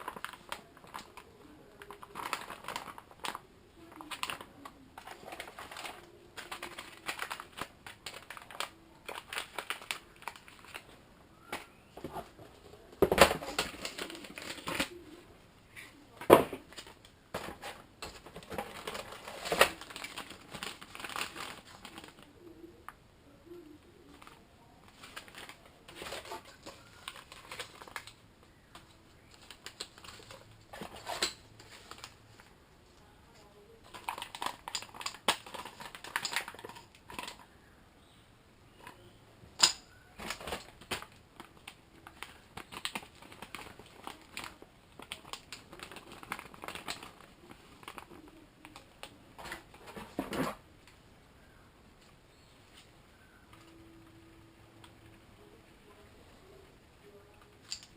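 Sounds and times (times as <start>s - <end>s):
packaging crinkling: 0.0s - 10.9s, 16.7s - 22.3s, 24.1s - 28.2s, 28.8s - 32.4s, 33.8s - 37.4s, 40.2s - 50.3s
packaging rustling: 0.0s - 15.1s, 16.6s - 22.3s, 24.1s - 32.5s, 33.8s - 37.4s, 40.2s - 50.6s.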